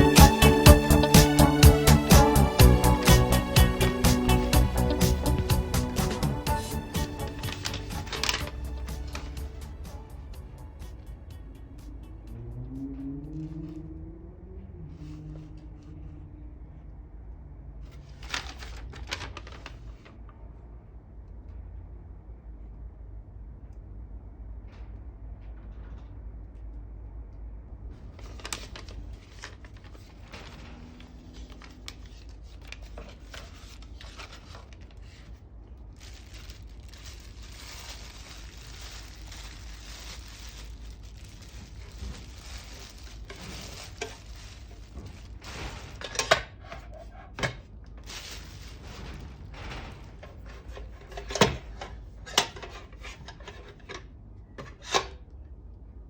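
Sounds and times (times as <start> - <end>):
mess tin scraping and rubbing: 0.0 - 10.1, 36.0 - 49.2.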